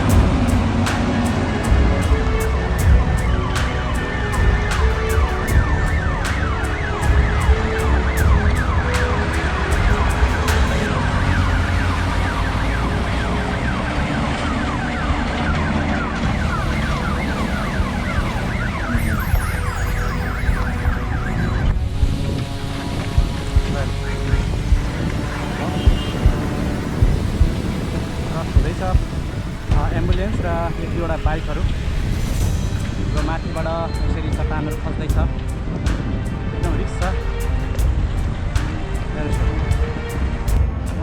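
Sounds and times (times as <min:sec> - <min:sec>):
ambulance siren wailing: 0:00.0 - 0:35.5
vehicle engines rumbling: 0:00.0 - 0:41.0.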